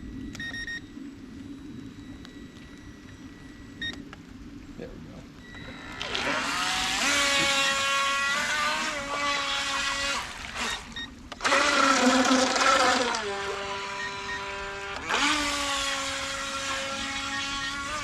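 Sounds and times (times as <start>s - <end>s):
electric boat motor whining: 5.5s - 18.0s.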